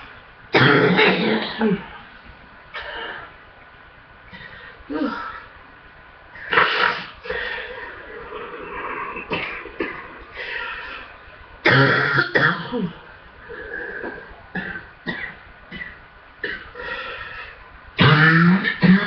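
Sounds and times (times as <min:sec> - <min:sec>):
person coughing: 0:00.6 - 0:02.0, 0:02.8 - 0:03.3, 0:08.7 - 0:10.8, 0:11.7 - 0:13.0, 0:13.9 - 0:17.0, 0:18.0 - 0:19.0
throat clearing: 0:00.6 - 0:02.0, 0:02.8 - 0:03.3, 0:08.4 - 0:10.3.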